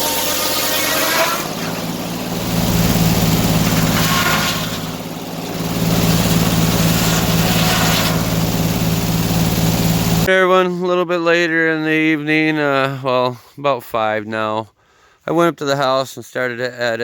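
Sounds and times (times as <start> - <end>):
engine running: 0.0 - 10.3.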